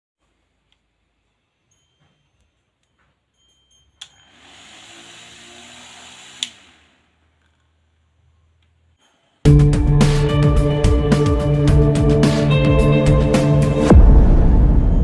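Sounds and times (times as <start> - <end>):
small fan whirring: 0.2 - 9.5.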